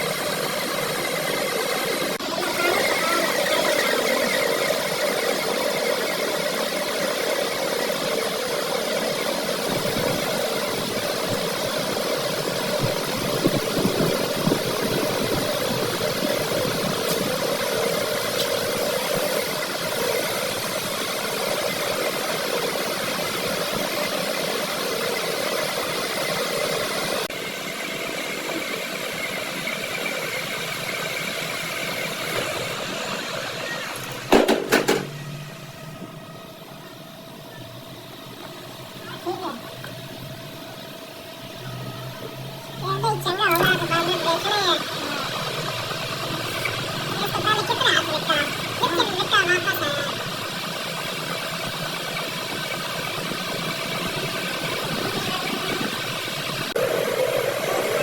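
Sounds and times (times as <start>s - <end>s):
metalworking lathe humming: 0.0s - 58.0s
sharp knocks: 34.3s - 35.2s.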